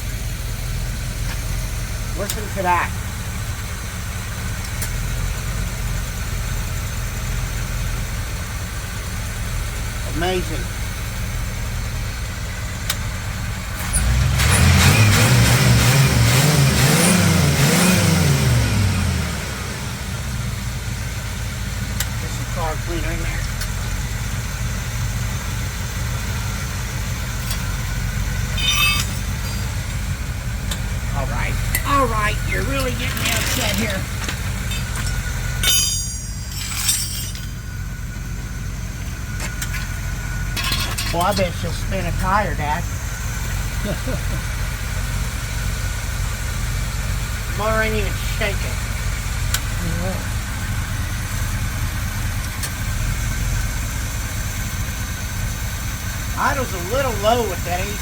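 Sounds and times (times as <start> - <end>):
car engine idling: 0.0 - 58.0
short high chirp: 28.5 - 30.1.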